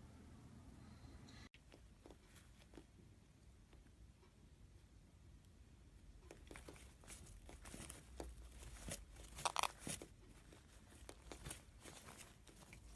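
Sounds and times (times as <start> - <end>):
paper crinkling and rustling: 6.5 - 12.9.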